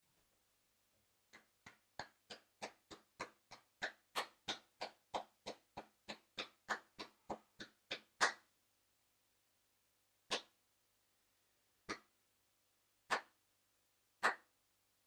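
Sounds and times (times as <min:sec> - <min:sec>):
person clapping hands: 0:01.4 - 0:08.4, 0:13.1 - 0:13.4, 0:14.2 - 0:14.5.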